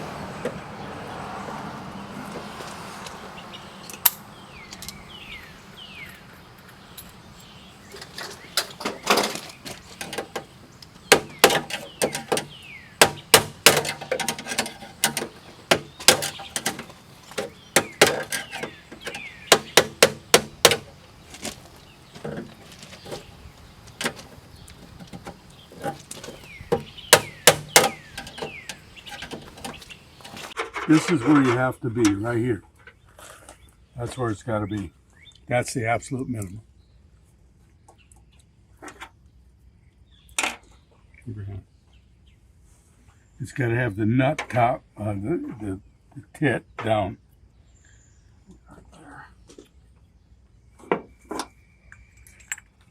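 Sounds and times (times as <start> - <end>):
hammer striking chisel: 11.1 - 21.6, 25.8 - 30.5.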